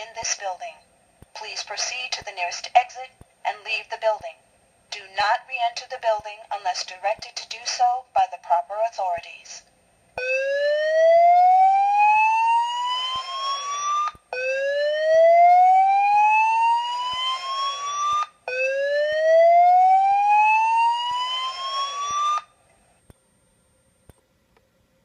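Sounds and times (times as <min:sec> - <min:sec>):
fire alarm whoop tone: 0:10.2 - 0:22.5.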